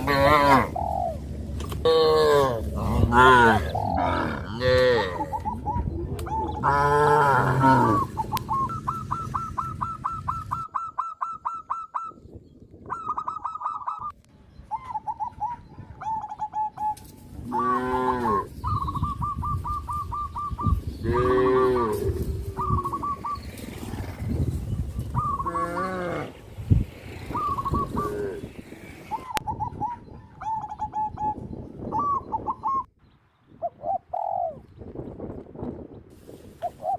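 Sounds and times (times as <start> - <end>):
cows mooing: 0.0 - 0.8, 1.8 - 5.4, 6.6 - 8.1, 17.4 - 18.5, 21.0 - 22.4, 25.4 - 26.5
birds chirping: 0.0 - 36.1.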